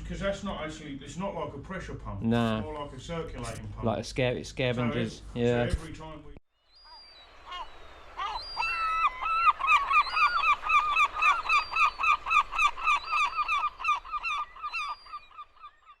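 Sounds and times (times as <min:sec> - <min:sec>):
geese honking: 0:07.4 - 0:16.0.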